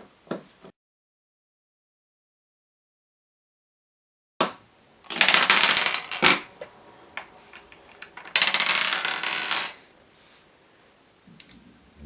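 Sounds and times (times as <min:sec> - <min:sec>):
plastic cube pieces clattering: 0:05.1 - 0:06.5.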